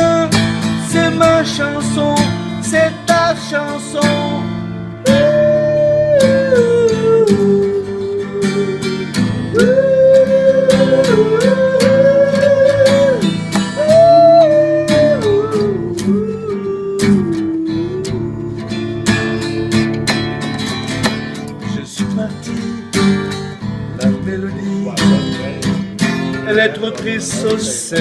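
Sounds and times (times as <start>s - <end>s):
acoustic guitar strumming: 0.0s - 28.0s
sliding melody line: 5.1s - 21.6s.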